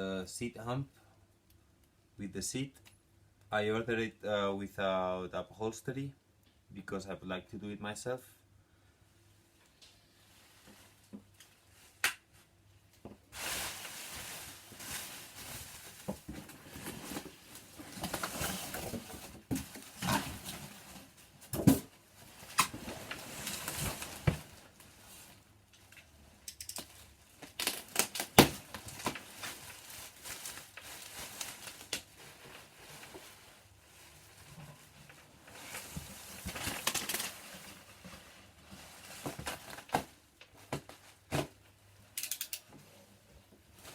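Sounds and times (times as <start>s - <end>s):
packaging rustling and tearing: 13.4s - 41.5s.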